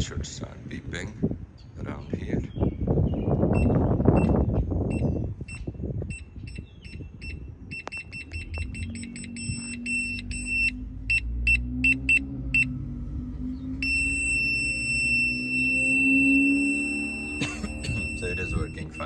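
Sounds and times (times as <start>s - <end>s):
low engine hum: 0.0s - 19.0s
parking sensor beeping: 3.4s - 12.9s, 13.7s - 19.0s.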